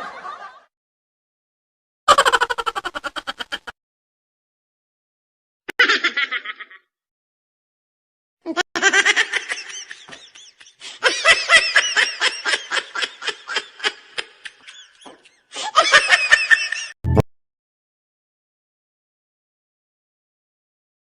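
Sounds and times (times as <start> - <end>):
person laughing: 2.1 - 3.8, 5.7 - 6.8, 8.5 - 17.0.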